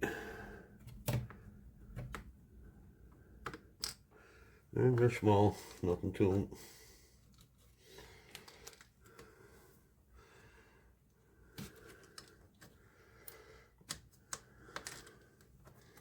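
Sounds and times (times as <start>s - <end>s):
screwdriver and plastic parts clicking: 3.4s - 4.0s, 8.3s - 9.2s, 11.9s - 16.0s.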